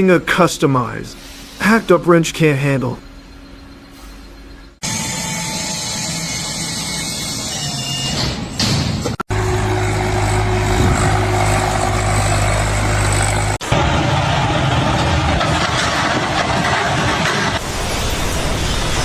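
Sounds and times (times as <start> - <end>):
loud machinery engine noise: 2.9 - 19.0
low motor hum: 9.1 - 19.0.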